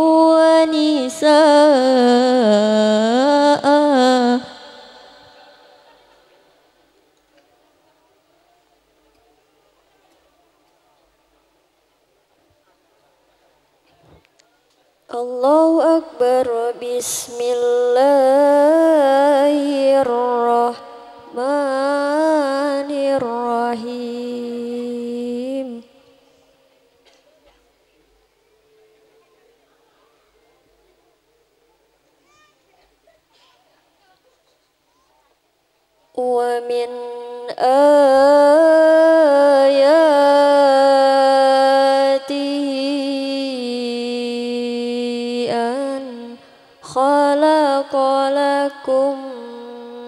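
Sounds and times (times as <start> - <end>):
person reciting melodically: 0.0 - 6.6, 15.1 - 26.3, 36.1 - 50.0.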